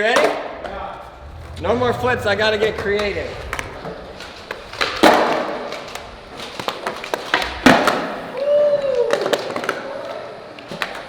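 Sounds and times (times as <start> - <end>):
rising-then-falling tone: 0.5 - 7.8.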